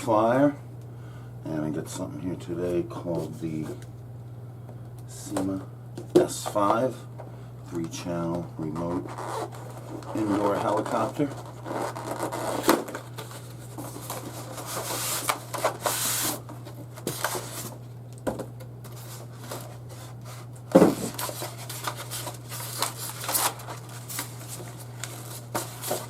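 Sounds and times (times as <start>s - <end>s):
packaging rustling and clicking: 21.0s - 26.0s.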